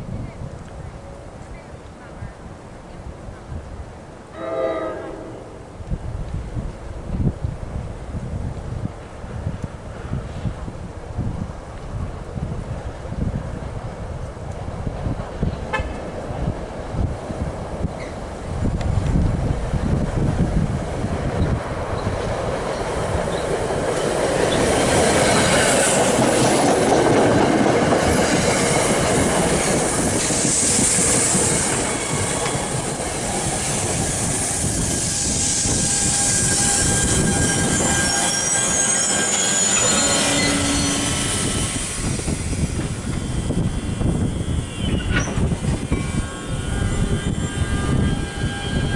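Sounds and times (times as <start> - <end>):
train wheels rumbling on rails: 5.7 - 48.9
wheels squealing: 33.6 - 48.9.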